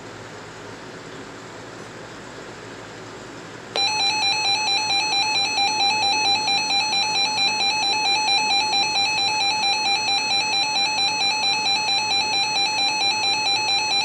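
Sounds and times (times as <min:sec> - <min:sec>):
buzzy two-pitch alert beep: 0:03.8 - 0:14.0.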